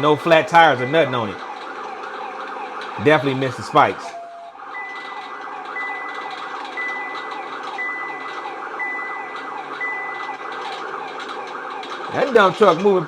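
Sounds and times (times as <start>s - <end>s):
police siren yelping: 0.0s - 13.0s
high beeps: 4.1s - 5.2s, 5.8s - 10.4s.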